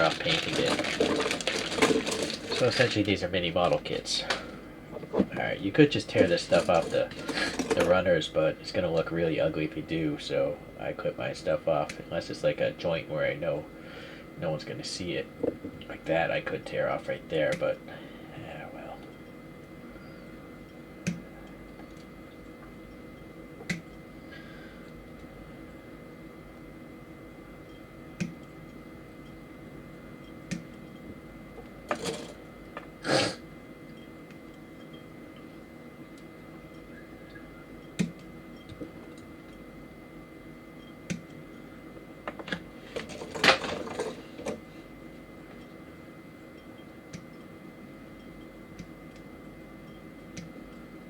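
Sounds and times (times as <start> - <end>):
plastic parts clicking and snapping: 0.0 - 3.0
plastic rattle: 0.0 - 4.4, 6.2 - 7.9.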